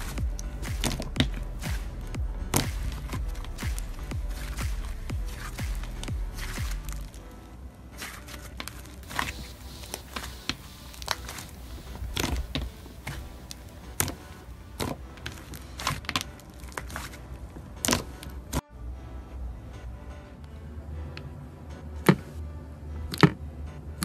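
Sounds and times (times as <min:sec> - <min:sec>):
faint background music: 0:00.0 - 0:24.0
slime crackling and popping: 0:08.0 - 0:17.2.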